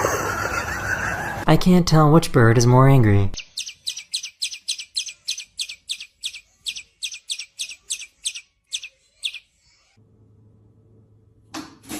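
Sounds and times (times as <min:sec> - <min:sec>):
birds chirping sharply: 0:03.3 - 0:09.7.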